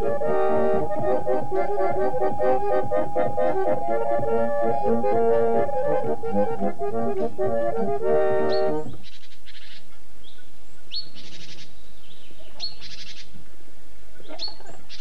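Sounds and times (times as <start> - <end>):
accordion music: 0.0 - 9.0.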